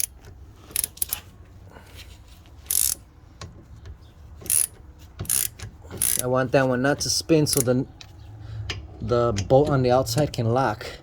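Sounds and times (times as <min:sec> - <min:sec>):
ratchet wrench clicking: 0:00.0 - 0:01.2, 0:02.6 - 0:03.0, 0:04.4 - 0:06.3, 0:07.5 - 0:07.7.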